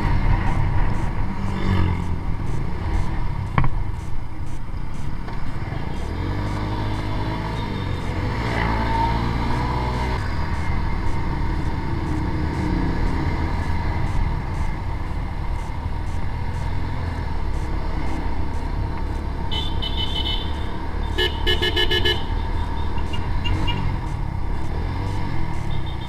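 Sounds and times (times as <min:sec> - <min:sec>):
motorcycle engine rumble: 0:00.0 - 0:26.0
vehicle horn honking: 0:19.5 - 0:23.9.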